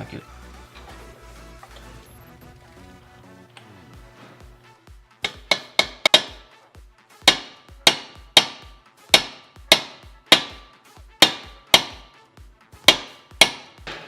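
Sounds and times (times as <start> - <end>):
hammer striking metal pin: 5.2 - 6.5, 7.2 - 12.2, 12.8 - 14.0.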